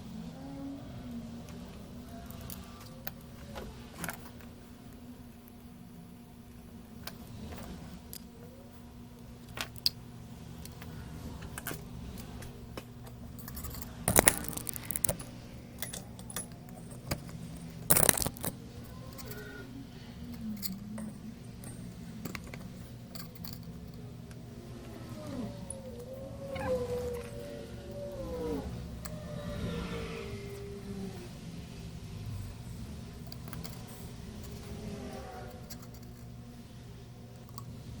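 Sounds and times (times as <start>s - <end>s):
steady low hum: 0.0s - 38.0s
metal tools clinking on a workbench: 13.4s - 19.4s.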